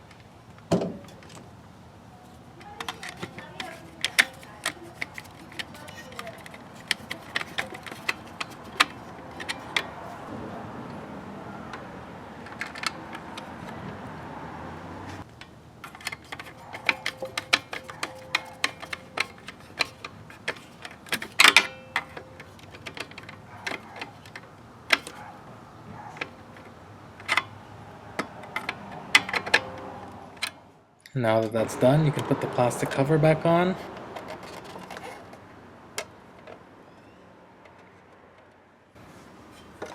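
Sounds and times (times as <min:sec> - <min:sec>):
tools clicking on metal box: 0:02.6 - 0:10.2, 0:15.3 - 0:30.6.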